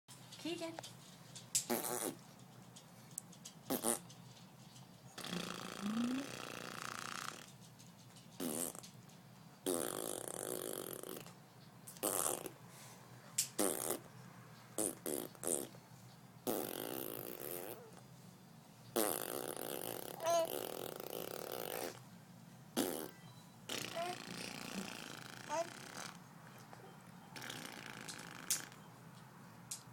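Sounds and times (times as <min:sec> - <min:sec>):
fart noises: 0:01.6 - 0:02.2, 0:03.7 - 0:04.2, 0:05.2 - 0:07.5, 0:08.4 - 0:09.0, 0:09.6 - 0:11.4, 0:12.0 - 0:12.6, 0:13.6 - 0:14.1, 0:14.8 - 0:15.8, 0:16.4 - 0:18.0, 0:18.9 - 0:22.0, 0:22.8 - 0:26.3, 0:27.4 - 0:28.9.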